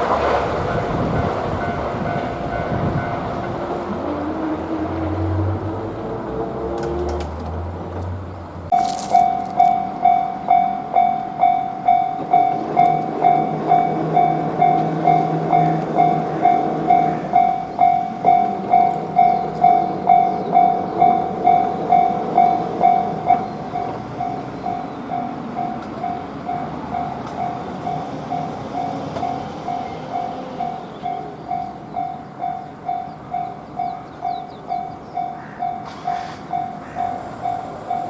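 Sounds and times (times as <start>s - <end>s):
diesel train passing: 0.0s - 38.0s
level-crossing bell ringing: 0.7s - 6.1s, 8.7s - 38.0s.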